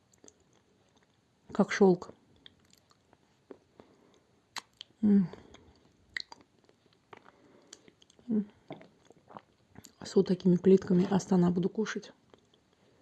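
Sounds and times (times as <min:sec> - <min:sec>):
chewing crunches: 0:00.1 - 0:01.2, 0:02.4 - 0:10.0
wet mouth clicks: 0:04.5 - 0:10.0.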